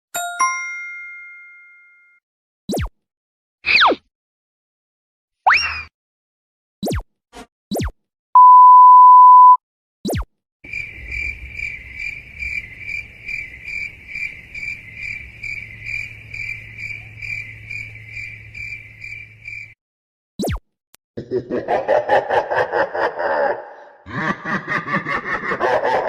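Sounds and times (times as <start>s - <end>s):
censor bleep: 8.4s - 9.6s
crickets chirping: 10.7s - 19.8s.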